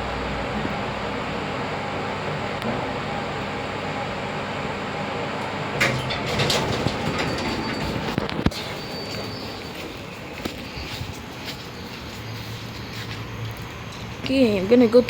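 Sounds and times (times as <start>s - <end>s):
lift mechanical rumble: 0.0s - 15.0s
rattling and clicks: 5.4s - 12.4s.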